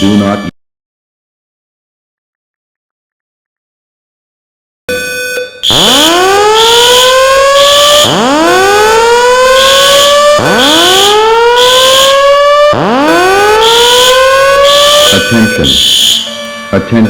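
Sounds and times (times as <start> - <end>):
fire alarm whoop tone: 4.9 - 17.0.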